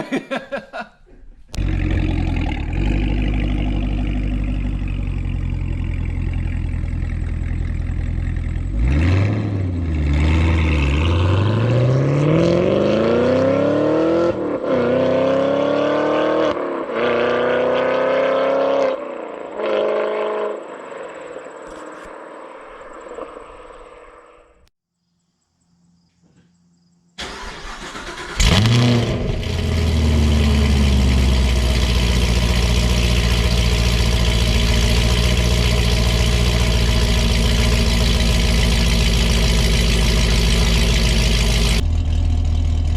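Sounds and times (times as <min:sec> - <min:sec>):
deep engine idle: 0:01.6 - 0:08.7, 0:29.4 - 0:42.9
car engine accelerating hard: 0:01.6 - 0:20.9, 0:27.2 - 0:42.9
engine starting with sharp rev: 0:27.2 - 0:33.7.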